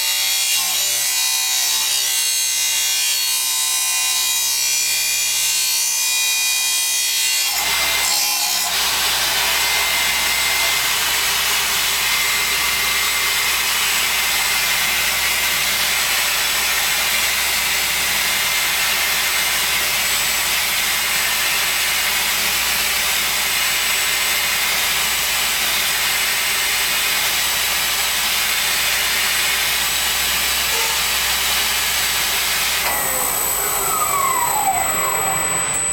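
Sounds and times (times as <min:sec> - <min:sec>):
saw grinding through metal: 0:00.0 - 0:35.9
tones gliding in pitch: 0:32.8 - 0:35.9.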